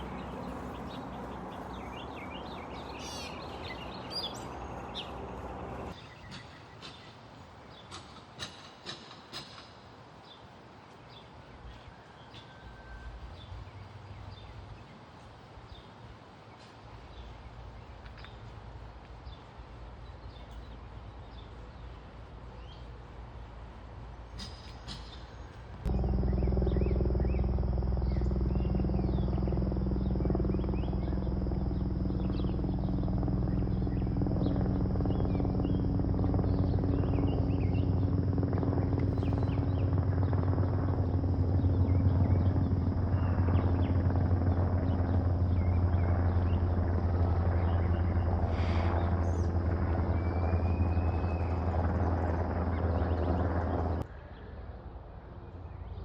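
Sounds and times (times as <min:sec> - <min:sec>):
aircraft engine drone: 0:00.0 - 0:06.2, 0:23.2 - 0:56.0.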